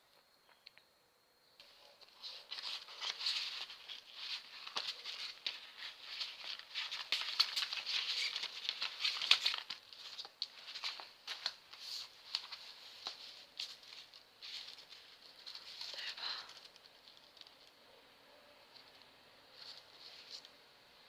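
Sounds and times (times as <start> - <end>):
packaging rustling and crinkling: 1.6 - 17.8.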